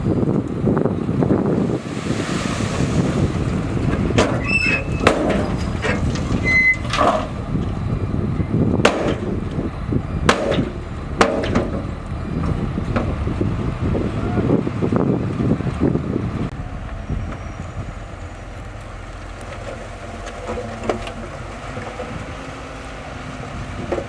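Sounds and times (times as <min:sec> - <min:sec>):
bulldozer diesel engine: 0:00.0 - 0:24.0
steel tracks clanking: 0:02.4 - 0:14.9
tracks squealing: 0:03.5 - 0:08.6.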